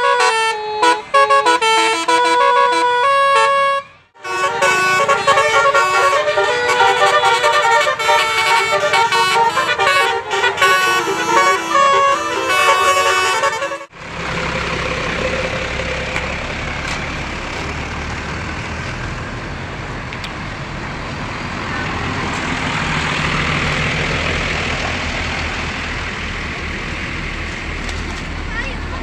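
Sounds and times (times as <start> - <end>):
multi-tone bus horn tune: 0.0 - 17.4
heavy vehicle engine rumble: 0.0 - 29.0
road and traffic noise: 0.0 - 29.0.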